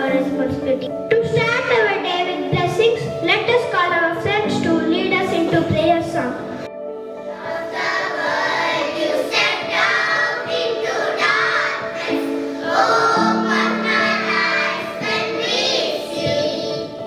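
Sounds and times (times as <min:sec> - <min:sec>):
children singing in unison: 0:07.3 - 0:17.0.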